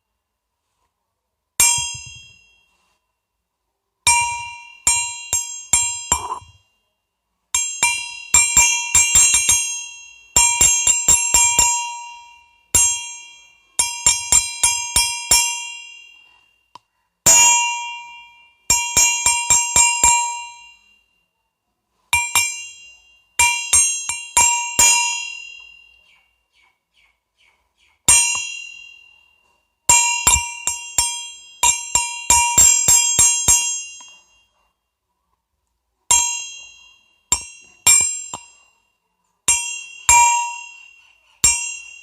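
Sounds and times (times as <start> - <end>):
small metal bell ringing: 1.6 - 3.0, 4.0 - 16.7, 36.1 - 42.0.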